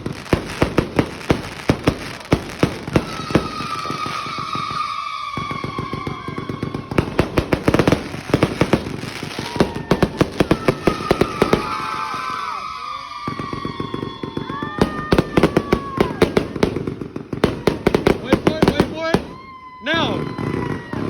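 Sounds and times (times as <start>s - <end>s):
firework bangs: 0.0s - 21.0s
firework whistles sliding down: 2.1s - 16.7s.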